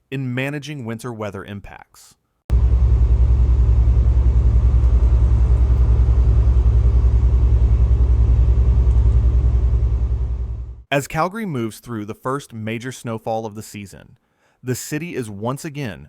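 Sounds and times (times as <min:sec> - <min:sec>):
vehicle engine rumbling: 0:02.5 - 0:10.9.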